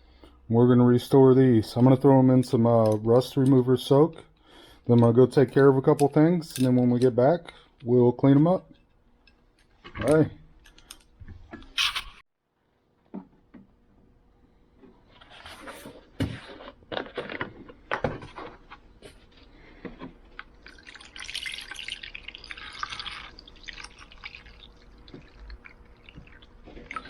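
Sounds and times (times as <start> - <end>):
liquid splashing and pouring: 20.6 - 27.0.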